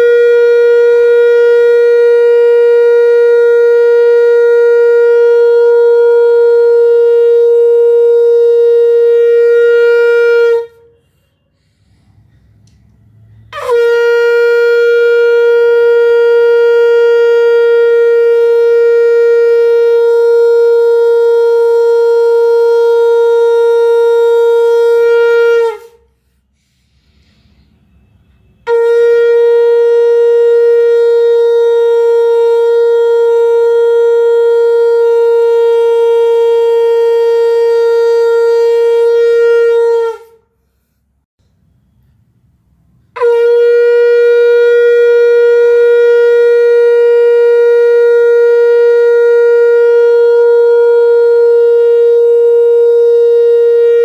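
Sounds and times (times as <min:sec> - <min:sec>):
conch shell blasts: 0:00.0 - 0:11.8, 0:12.8 - 0:26.3, 0:27.8 - 0:40.7, 0:42.9 - 0:54.0.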